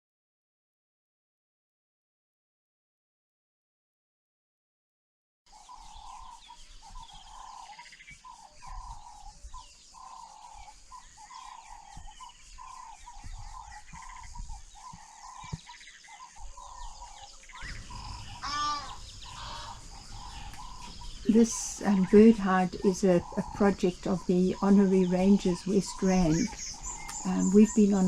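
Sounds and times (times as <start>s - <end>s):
high-pitched insect shrill: 17.7s - 21.9s.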